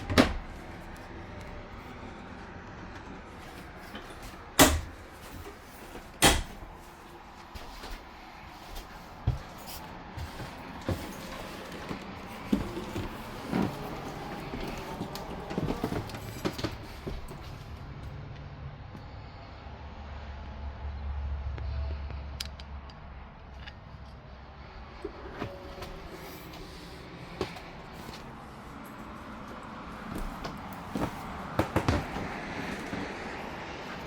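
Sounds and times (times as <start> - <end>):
cupboard doors banging: 4.6 - 5.0, 6.2 - 6.7.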